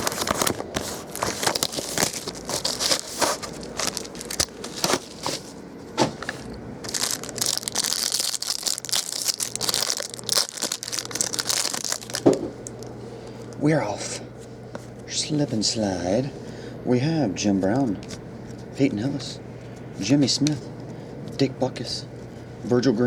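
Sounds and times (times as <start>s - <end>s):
packaging crinkling and tearing: 0.0s - 5.5s, 6.8s - 12.9s.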